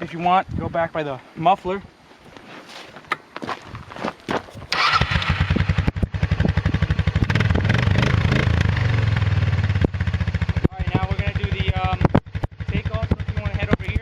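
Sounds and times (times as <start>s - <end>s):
engine cranking and starting: 4.6s - 8.7s
engine running with rapid firing: 4.7s - 14.0s.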